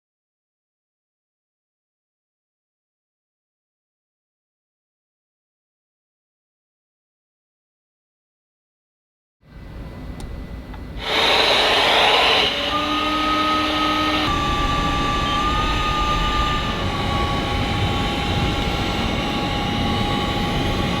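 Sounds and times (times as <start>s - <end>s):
robot suction fan with motor whine: 9.6s - 21.0s.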